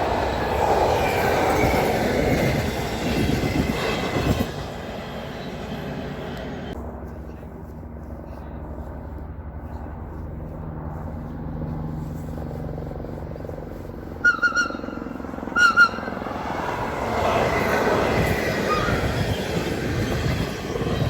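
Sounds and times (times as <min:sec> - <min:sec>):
electric train rumbling: 0:00.0 - 0:06.9, 0:12.0 - 0:21.0
rail noise: 0:00.0 - 0:09.2, 0:10.0 - 0:21.0.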